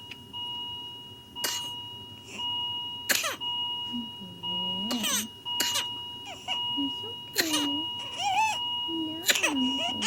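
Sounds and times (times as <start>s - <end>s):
child coughing harshly: 1.4s - 1.8s, 3.1s - 3.4s, 5.0s - 5.9s, 7.4s - 7.8s, 9.2s - 10.0s.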